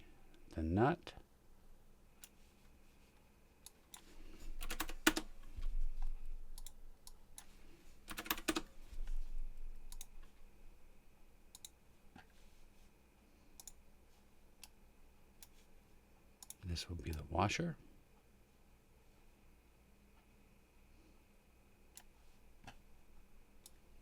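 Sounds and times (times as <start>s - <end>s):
computer keyboard typing: 4.6s - 5.3s, 8.1s - 8.7s
mouse clicks: 9.9s - 10.2s, 11.5s - 11.8s, 13.6s - 13.8s.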